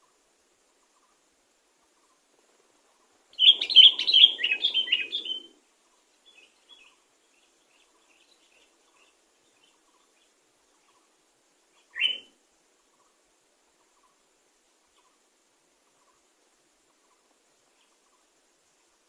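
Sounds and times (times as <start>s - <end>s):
bulbul whistled song: 3.4s - 5.5s, 11.9s - 12.3s.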